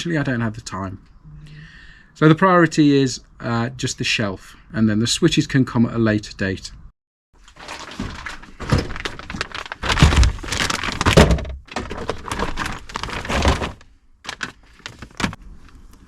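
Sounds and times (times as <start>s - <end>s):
objects knocking and thunking: 7.4s - 15.4s.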